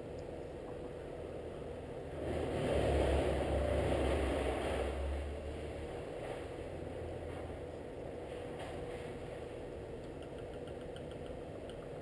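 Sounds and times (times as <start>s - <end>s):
low noisy rumble: 0.0s - 12.0s.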